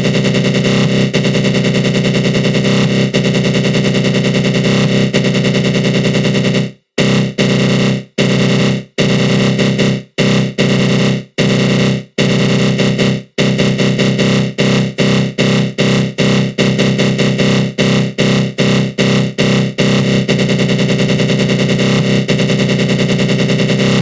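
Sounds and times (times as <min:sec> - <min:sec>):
synthesized growl with flanger: 0:23.8 - 0:24.0.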